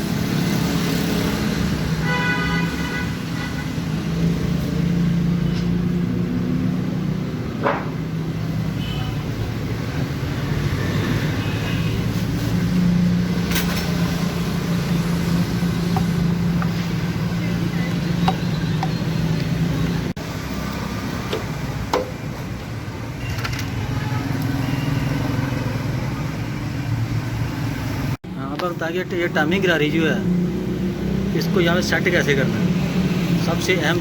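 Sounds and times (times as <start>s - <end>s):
engine hum: 12.0s - 23.2s.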